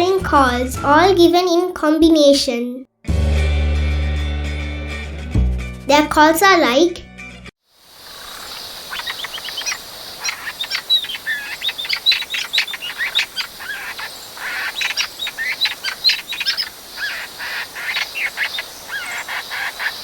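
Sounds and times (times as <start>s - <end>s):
laughingthrush chattering calls: 8.0s - 20.0s.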